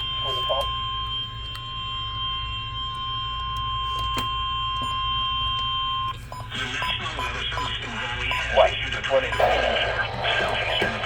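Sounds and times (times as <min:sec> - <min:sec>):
high alarm beep: 0:00.0 - 0:11.0
low background hum: 0:00.0 - 0:11.0
noisy radio audio: 0:00.2 - 0:00.7, 0:06.3 - 0:11.0.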